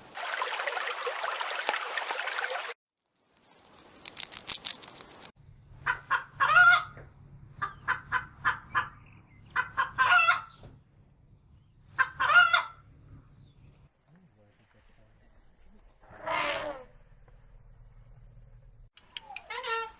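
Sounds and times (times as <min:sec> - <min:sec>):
hen clucking: 0:00.2 - 0:02.7, 0:19.0 - 0:19.9.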